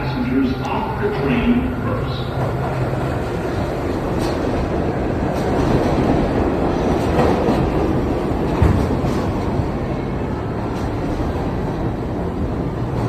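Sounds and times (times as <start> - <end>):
subway train running: 0.0 - 13.0.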